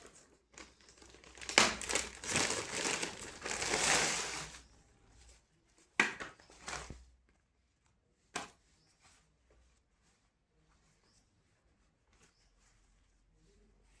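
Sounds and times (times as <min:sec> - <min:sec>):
packaging crinkling: 0:00.0 - 0:04.6.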